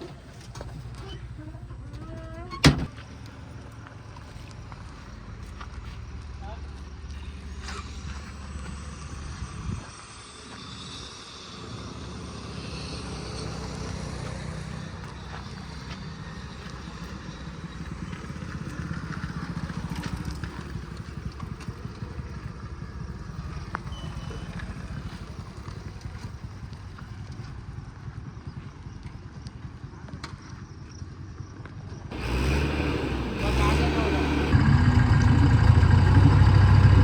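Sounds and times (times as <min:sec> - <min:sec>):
diesel engine running: 0:32.1 - 0:37.0.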